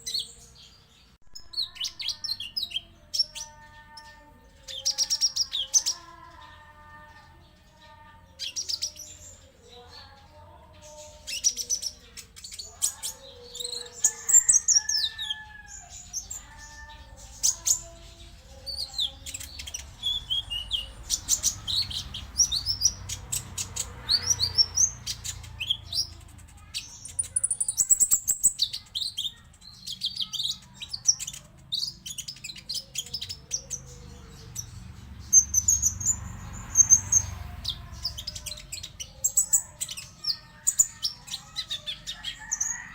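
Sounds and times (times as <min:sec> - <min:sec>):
songbird singing and chattering: 0:00.0 - 0:42.9.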